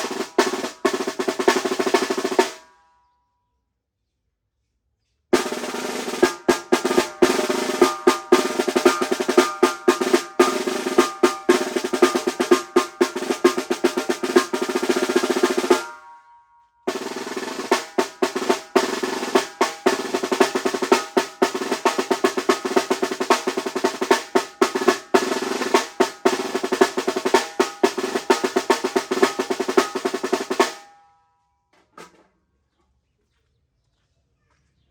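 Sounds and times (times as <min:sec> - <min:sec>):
snare drum rolls: 0:00.0 - 0:02.7, 0:05.4 - 0:16.2, 0:16.9 - 0:30.9.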